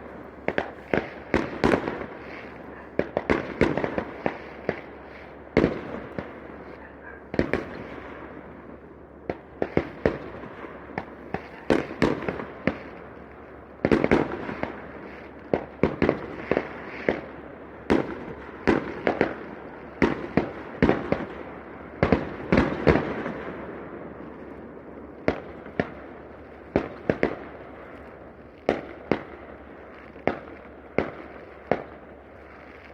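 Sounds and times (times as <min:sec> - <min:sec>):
fireworks banging: 0:00.0 - 0:08.2.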